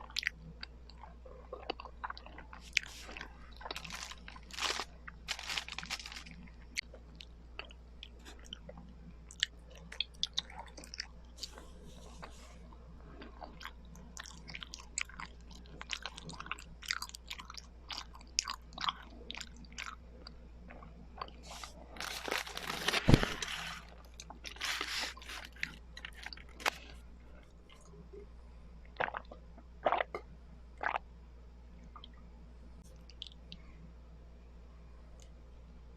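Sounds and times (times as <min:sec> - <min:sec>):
close chewing and biting: 0:00.0 - 0:08.6, 0:13.2 - 0:27.0.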